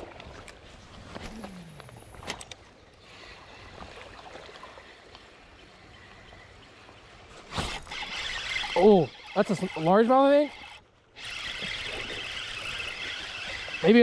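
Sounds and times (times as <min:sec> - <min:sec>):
river water flowing: 0:00.0 - 0:14.0
sharp clicks: 0:07.6 - 0:13.8.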